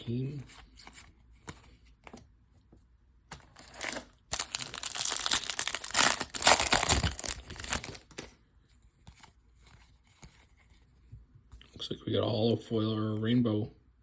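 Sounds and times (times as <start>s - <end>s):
plastic wrapper crinkling: 3.5s - 8.3s.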